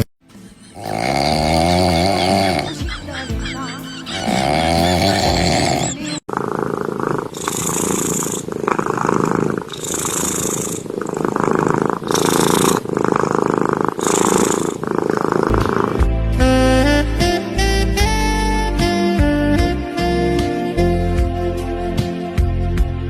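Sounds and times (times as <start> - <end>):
cat snoring: 0.6 - 2.8, 4.1 - 16.0.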